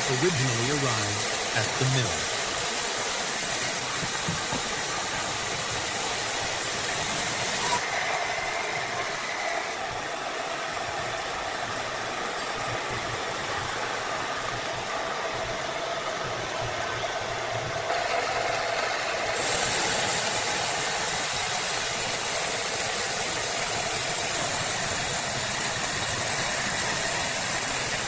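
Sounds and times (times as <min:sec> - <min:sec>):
high hiss: 0:00.0 - 0:08.0, 0:19.4 - 0:28.0
mill machinery noise: 0:00.0 - 0:28.0.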